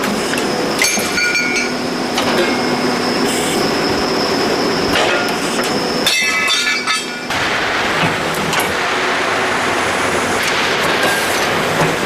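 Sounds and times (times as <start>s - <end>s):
machine high whine and rumble: 0.0s - 12.0s
sharp metal clanks: 0.8s - 2.7s, 6.0s - 7.3s.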